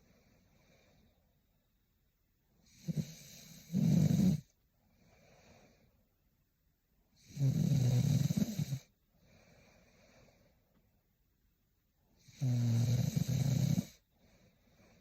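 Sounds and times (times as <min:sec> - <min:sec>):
woman snoring: 0:02.7 - 0:04.5, 0:07.2 - 0:08.9, 0:12.2 - 0:14.0.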